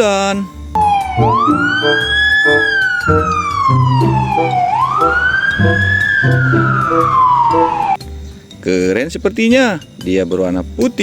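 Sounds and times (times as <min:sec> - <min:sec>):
ambulance siren wailing: 0:00.8 - 0:08.0
background music with beat: 0:00.8 - 0:08.2.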